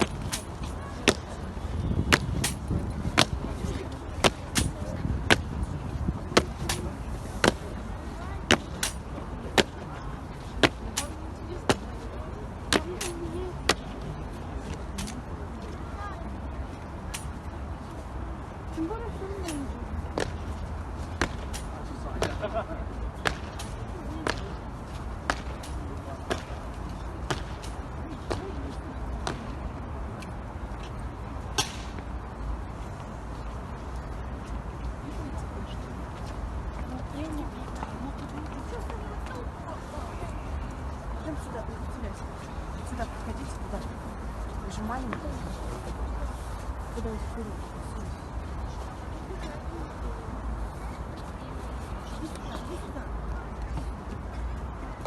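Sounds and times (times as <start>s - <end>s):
boot heels on stone pavement: 0.0s - 15.9s, 18.8s - 29.6s
wind: 0.0s - 55.0s.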